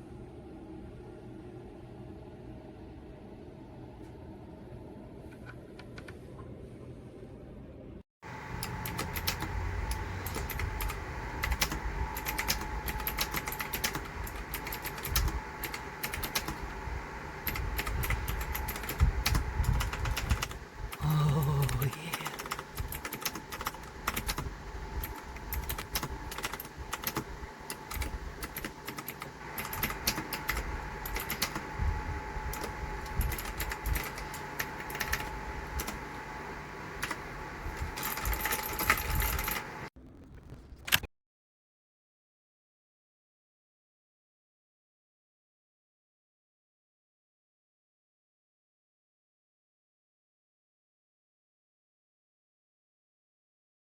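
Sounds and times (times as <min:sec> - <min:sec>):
mechanical keyboard typing: 0:08.5 - 0:16.7, 0:17.4 - 0:31.7, 0:32.5 - 0:36.0, 0:37.0 - 0:37.2, 0:37.8 - 0:39.8.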